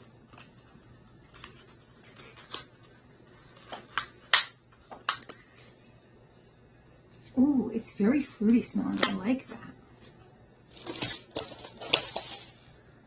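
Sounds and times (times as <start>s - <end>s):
packaging clicks and rustles: 0.3s - 5.5s, 10.7s - 12.6s.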